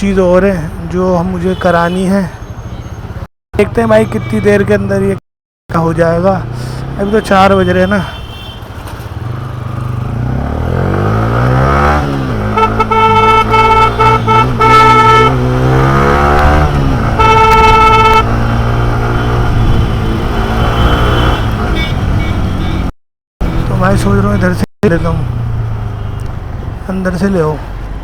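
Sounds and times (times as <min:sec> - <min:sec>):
motorcycle engine accelerating: 0:09.2 - 0:22.6
vehicle horn honking: 0:12.5 - 0:15.8, 0:16.5 - 0:18.4.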